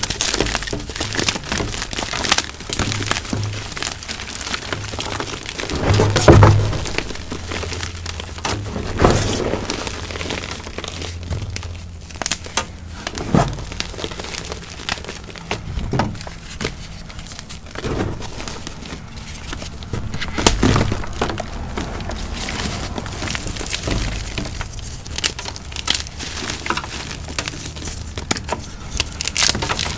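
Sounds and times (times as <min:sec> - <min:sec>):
chalk being crushed by hand: 0:00.0 - 0:29.9.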